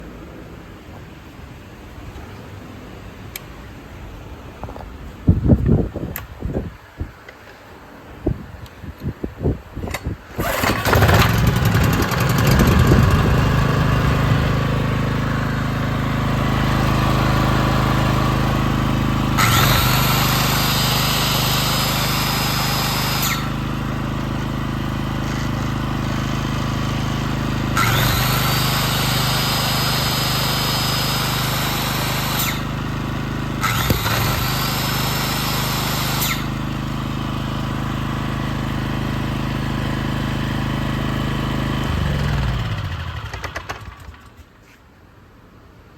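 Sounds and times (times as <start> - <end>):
electric tool whining: 10.3 - 44.4
generator engine running: 10.3 - 44.4.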